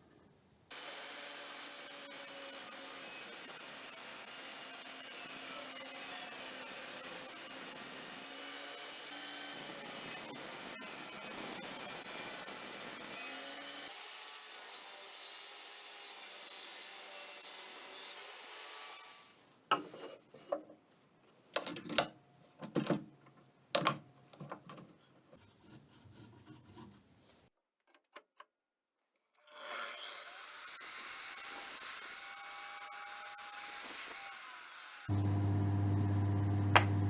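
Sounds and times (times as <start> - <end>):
power tool whining: 35.0 - 37.0.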